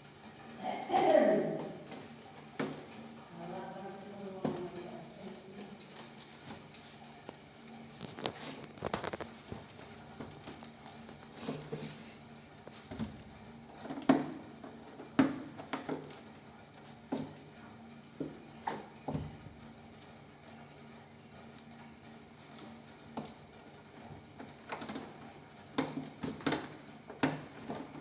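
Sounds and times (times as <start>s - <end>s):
kittens scuffling: 0.5s - 14.9s.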